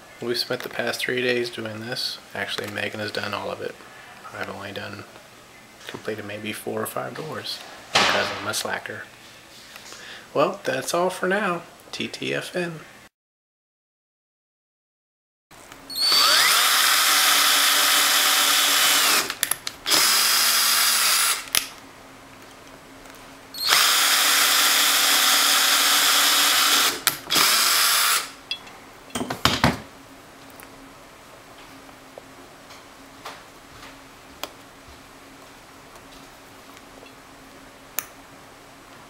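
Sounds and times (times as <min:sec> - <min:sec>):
power drill running: 0:15.9 - 0:21.6, 0:23.6 - 0:28.4.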